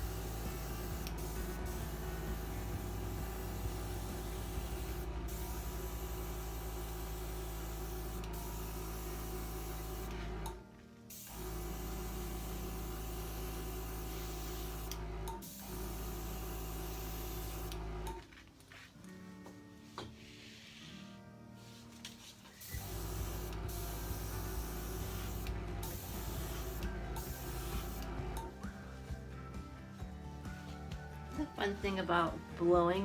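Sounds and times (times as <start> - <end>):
hair dryer running: 0.0 - 10.6, 11.3 - 18.2, 22.7 - 28.5.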